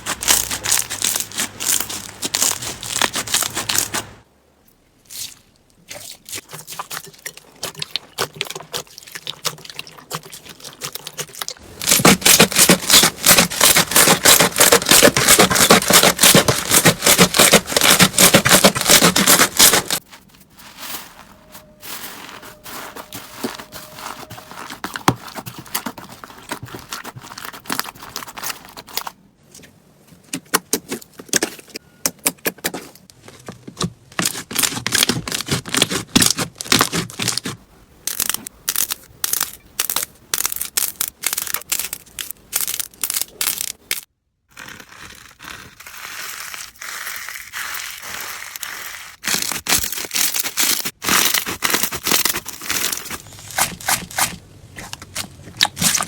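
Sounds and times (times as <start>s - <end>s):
slime crackling and popping: 38.1s - 56.0s.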